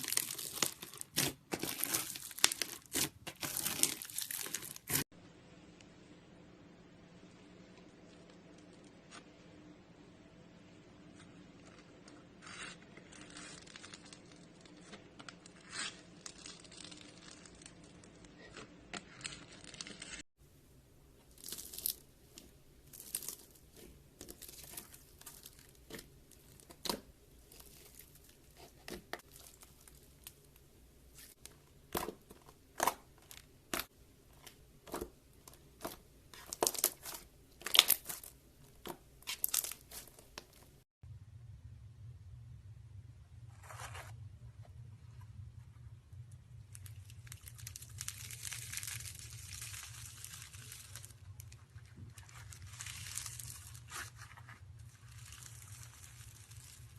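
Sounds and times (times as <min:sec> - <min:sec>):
slime crackling and popping: 0:00.0 - 0:05.0, 0:13.0 - 0:20.2, 0:21.3 - 0:30.4, 0:31.1 - 0:40.8, 0:46.7 - 0:54.2, 0:54.8 - 0:56.9.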